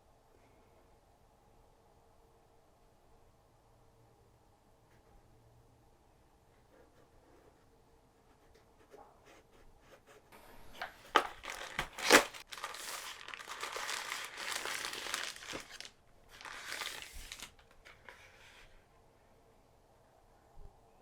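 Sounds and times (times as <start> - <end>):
packaging crinkling: 10.8 - 18.2.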